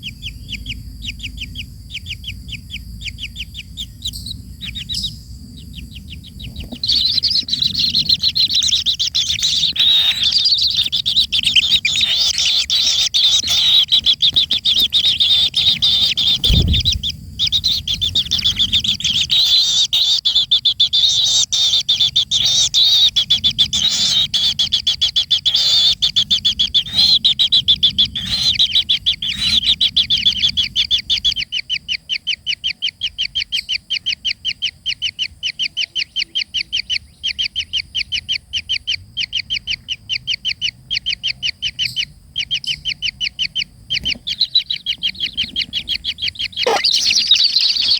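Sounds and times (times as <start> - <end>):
birds chirping: 0.0 - 47.9
low thump: 16.2 - 17.2.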